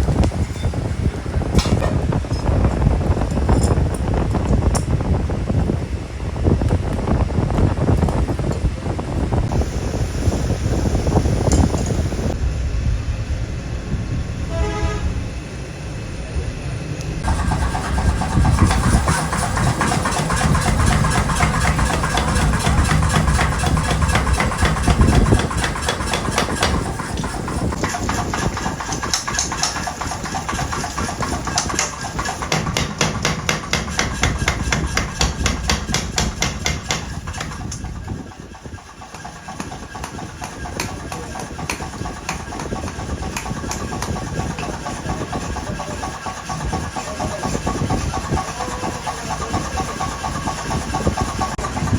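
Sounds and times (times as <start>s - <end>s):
machine motor running: 9.5s - 42.6s
rapid hammer strikes: 17.2s - 51.9s.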